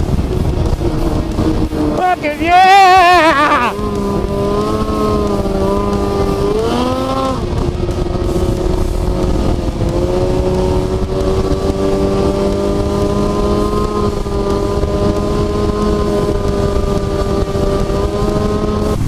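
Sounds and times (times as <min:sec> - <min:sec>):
snowmobile engine running: 0:00.0 - 0:19.0.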